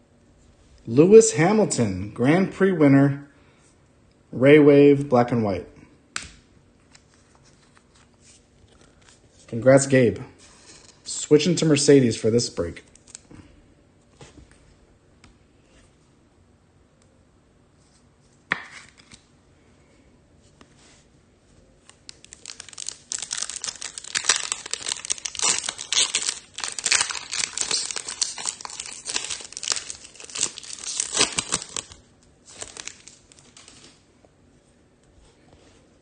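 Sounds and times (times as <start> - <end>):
wrappers crinkling and tearing: 12.8 - 13.4, 21.8 - 34.0.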